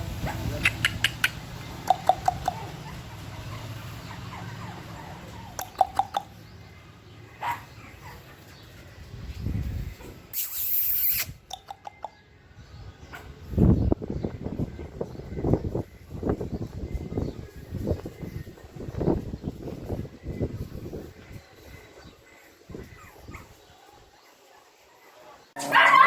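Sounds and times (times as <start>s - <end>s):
small animals squeaking: 0.5s - 6.4s, 10.0s - 11.9s
loud hiss: 10.3s - 11.4s.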